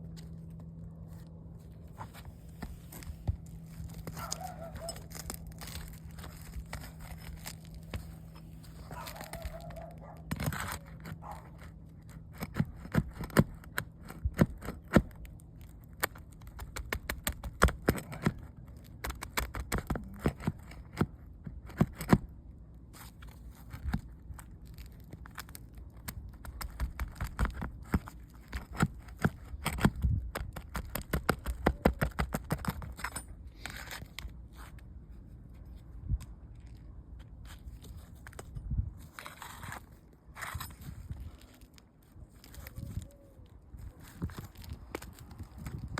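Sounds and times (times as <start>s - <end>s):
roof shingles scraping and tearing: 1.1s - 21.0s, 39.0s - 43.1s.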